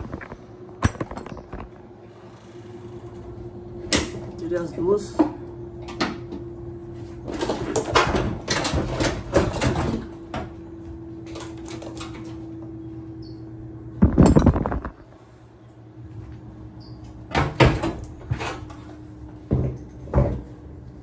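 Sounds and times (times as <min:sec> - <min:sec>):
loud clatter: 0:14.0 - 0:15.0.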